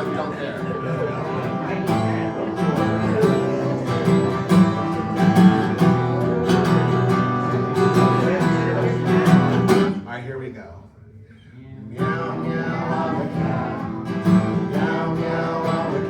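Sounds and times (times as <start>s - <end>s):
acoustic guitar strumming: 0.0s - 10.2s, 11.9s - 16.0s.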